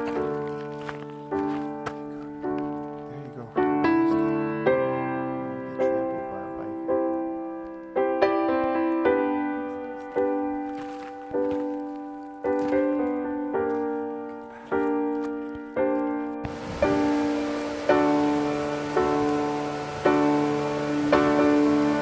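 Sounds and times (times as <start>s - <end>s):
slow solo piano: 0.0s - 22.0s.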